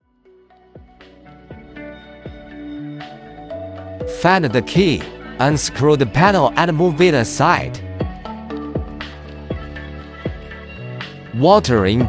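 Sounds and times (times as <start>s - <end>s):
melody of sustained notes: 1.2s - 8.9s.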